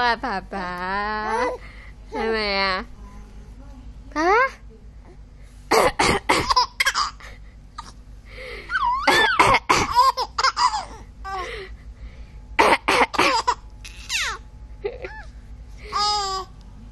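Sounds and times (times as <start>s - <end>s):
person coughing: 5.7s - 7.1s, 9.0s - 10.1s, 12.6s - 13.6s
baby giggling: 6.4s - 7.2s, 8.7s - 11.5s, 13.1s - 15.3s, 15.9s - 16.5s.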